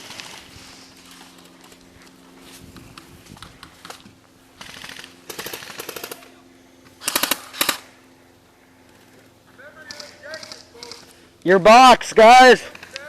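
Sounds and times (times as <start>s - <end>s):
airsoft guns firing: 4.6s - 6.4s, 7.0s - 8.0s.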